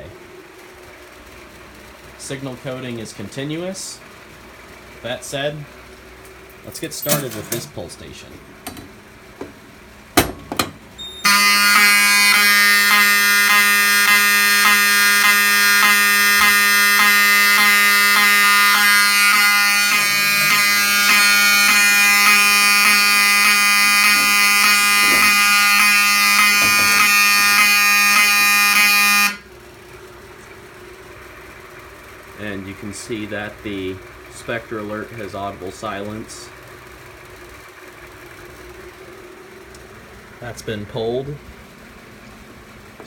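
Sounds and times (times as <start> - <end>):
fire alarm horn buzzing: 11.0 - 29.6.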